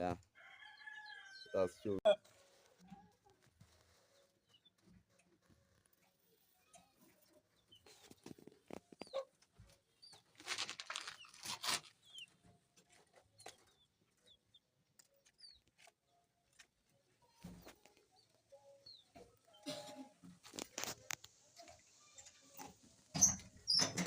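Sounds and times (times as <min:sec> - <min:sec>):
chicks peeping: 0:15.2 - 0:15.9, 0:17.3 - 0:19.6.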